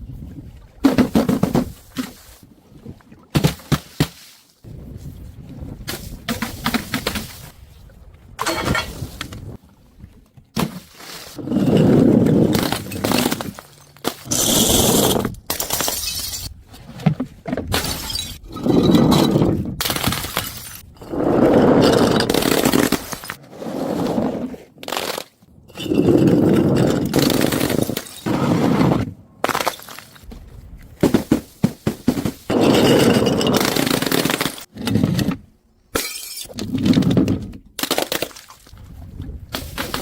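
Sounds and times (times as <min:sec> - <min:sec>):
glass bottles smashing on stairs: 0:15.5 - 0:16.5
high glass shatter: 0:15.5 - 0:16.5, 0:36.0 - 0:36.5.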